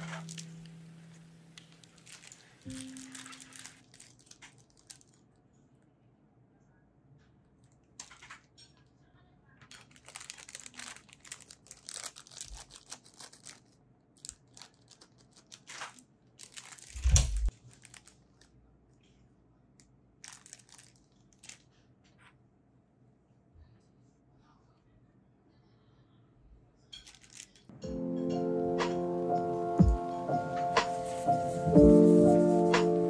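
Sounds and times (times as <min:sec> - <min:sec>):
plastic packaging crinkling: 0:00.0 - 0:05.4, 0:09.6 - 0:18.6, 0:20.2 - 0:21.8, 0:27.0 - 0:27.6.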